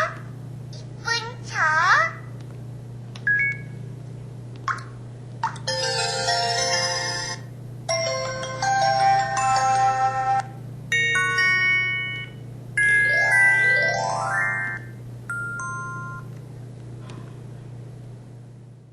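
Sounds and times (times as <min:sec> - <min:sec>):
melodic ringtone jingles: 0:05.7 - 0:10.4, 0:12.8 - 0:16.2.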